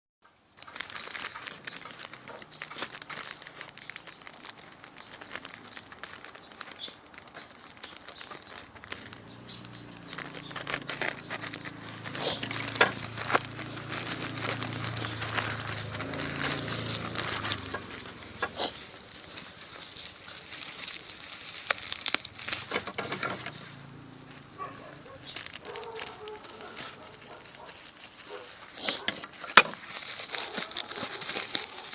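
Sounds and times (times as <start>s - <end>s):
plastic packaging crinkling: 0.4s - 31.9s
handling clicks and knocks: 8.7s - 19.4s, 22.2s - 24.0s, 28.8s - 31.8s.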